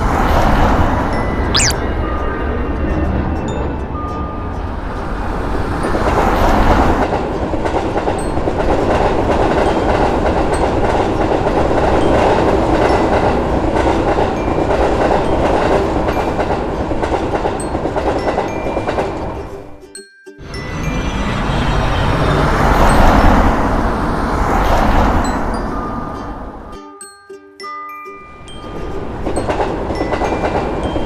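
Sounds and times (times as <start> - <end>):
train rumbling past: 0.0 - 19.6, 20.5 - 26.8, 28.7 - 31.0
train wheels clickety-clack: 28.9 - 31.0.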